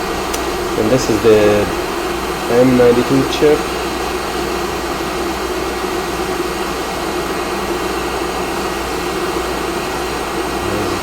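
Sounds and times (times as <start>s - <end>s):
hot air station blowing: 0.0s - 11.0s.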